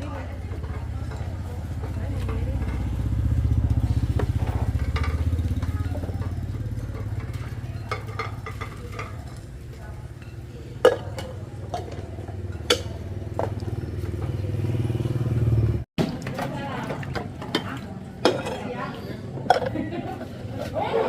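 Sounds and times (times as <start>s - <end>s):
clinks and knocks: 4.2s - 9.6s.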